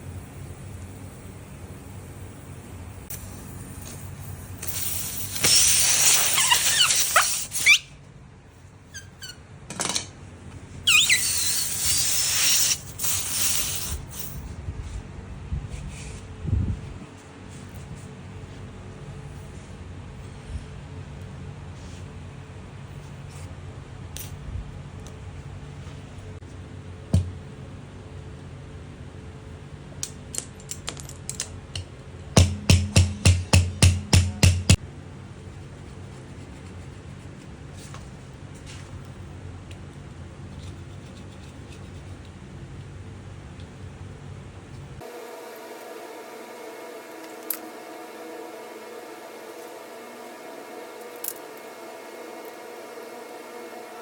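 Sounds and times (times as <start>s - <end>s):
air hissing with squealing whistles: 3.1s - 8.0s, 10.8s - 14.3s
short squeaks: 5.4s - 7.9s, 8.9s - 9.4s, 10.8s - 14.2s
heavy ringing knocks: 32.4s - 34.8s.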